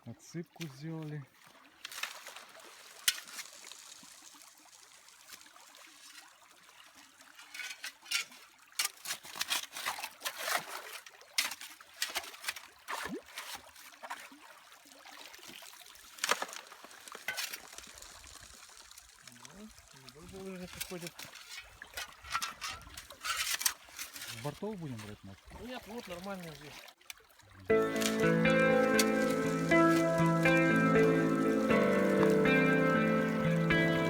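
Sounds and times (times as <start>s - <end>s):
stream water trickling: 0.0s - 34.0s
water splashing and pouring: 0.3s - 34.0s.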